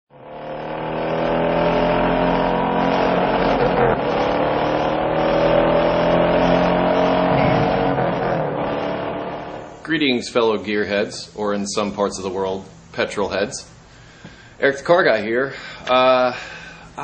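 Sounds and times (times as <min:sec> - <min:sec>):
car engine revving: 0:00.1 - 0:09.9.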